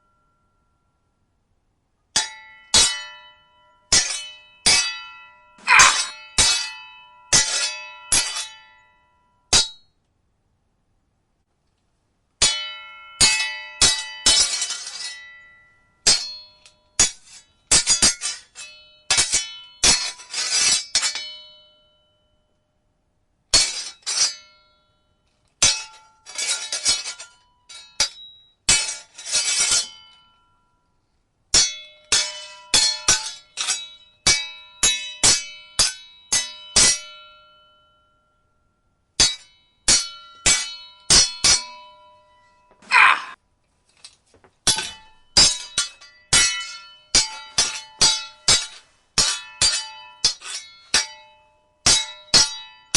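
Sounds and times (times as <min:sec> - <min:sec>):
swords clashing: 0:02.2 - 0:03.2, 0:03.9 - 0:08.6, 0:09.5 - 0:09.8, 0:16.1 - 0:16.4, 0:17.0 - 0:21.5, 0:25.6 - 0:30.1, 0:31.6 - 0:37.5, 0:39.2 - 0:41.9, 0:42.8 - 0:43.4, 0:44.7 - 0:52.8.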